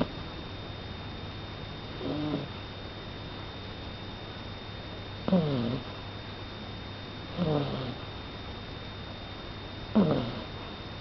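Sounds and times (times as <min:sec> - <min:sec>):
puppy snoring: 0:01.9 - 0:02.6, 0:05.2 - 0:06.0, 0:07.3 - 0:08.1, 0:09.9 - 0:10.7.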